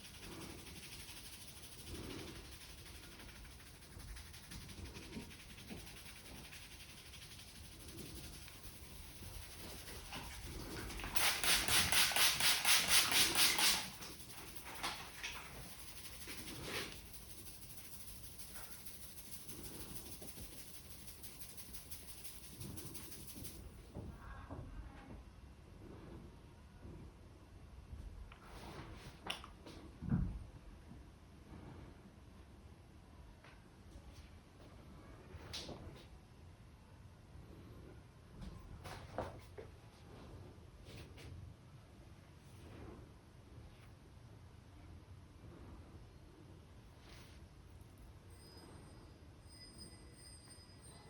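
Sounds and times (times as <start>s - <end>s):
hands rubbing hair and scalp: 0.0s - 23.8s.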